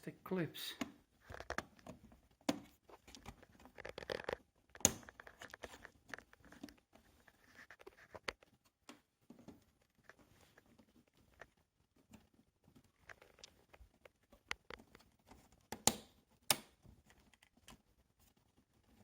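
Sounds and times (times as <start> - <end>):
plastic clips clicking and scraping: 0.8 - 6.8
sharp plastic snap: 4.8 - 5.2, 15.7 - 16.8.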